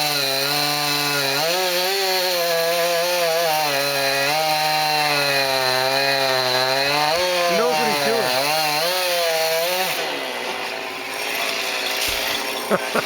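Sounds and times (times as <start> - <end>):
chainsaw engine cutting: 0.0 - 10.1.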